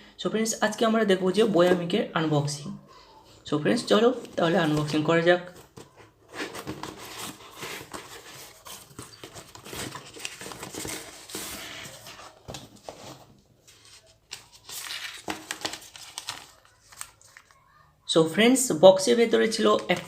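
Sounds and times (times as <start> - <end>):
package tearing and rustling: 6.3 - 17.6.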